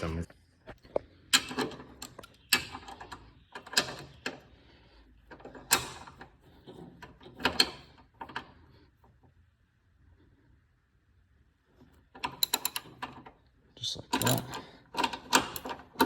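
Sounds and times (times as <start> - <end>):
socket wrench clanking on metal: 12.2 - 13.3, 14.1 - 16.0.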